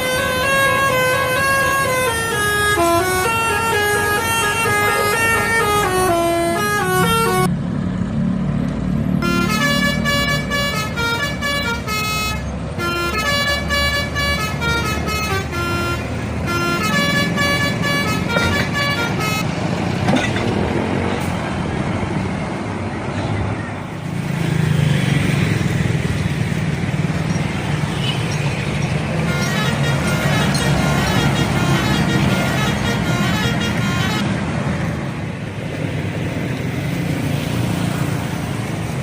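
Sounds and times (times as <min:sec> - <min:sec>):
air horns playing a melody: 0:00.0 - 0:07.5, 0:09.2 - 0:19.5, 0:29.2 - 0:34.3
bus engine running: 0:00.0 - 0:39.0
traffic noise: 0:00.0 - 0:39.0.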